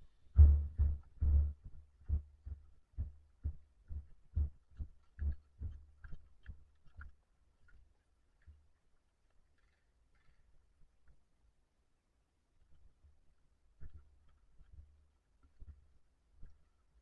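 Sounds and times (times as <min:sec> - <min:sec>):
low dull thumps: 0:00.0 - 0:05.8.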